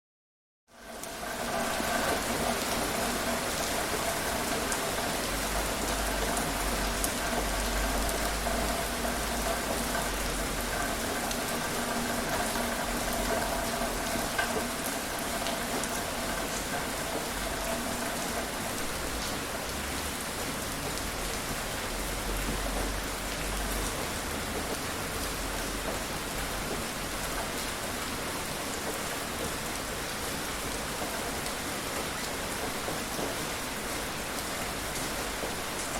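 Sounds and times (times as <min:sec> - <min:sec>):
steady rainfall: 0:00.7 - 0:35.9
raindrops ticking: 0:00.9 - 0:27.6.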